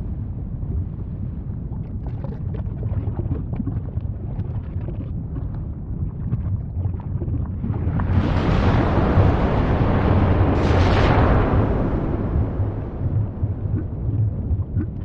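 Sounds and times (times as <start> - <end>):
volcano rumbling: 0.0 - 15.0
crackles and pops: 1.6 - 15.0
rushing hiss of eruption: 8.1 - 13.9.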